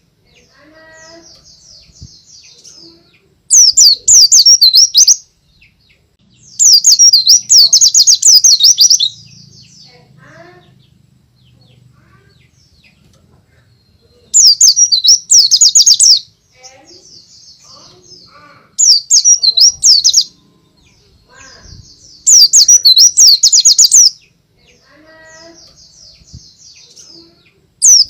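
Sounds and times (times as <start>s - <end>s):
faint bird chirps: 0.0s - 28.0s.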